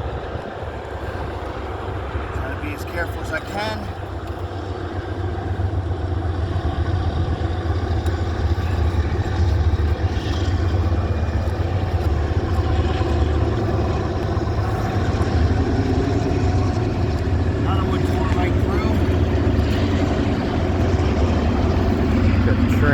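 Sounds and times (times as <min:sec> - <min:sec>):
train rumbling past: 0:00.0 - 0:22.9.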